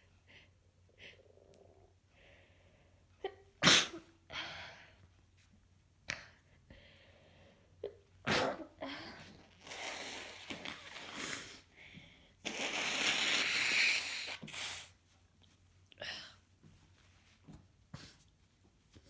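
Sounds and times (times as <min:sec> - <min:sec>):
person sneezing: 0:03.6 - 0:04.1, 0:08.3 - 0:11.5
person blowing nose: 0:09.5 - 0:11.7, 0:12.4 - 0:15.0
breathy sniffs: 0:12.4 - 0:15.0.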